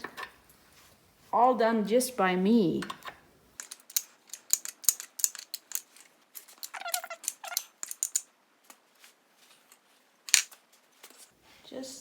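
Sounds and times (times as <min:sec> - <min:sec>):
wrench clicking: 0:03.6 - 0:08.2
short squeaks: 0:06.6 - 0:07.8.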